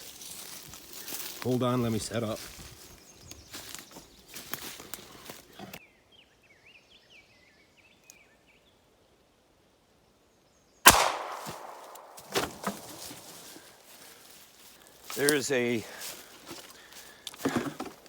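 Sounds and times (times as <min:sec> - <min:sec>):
revolver gunshot: 0:10.9 - 0:13.2.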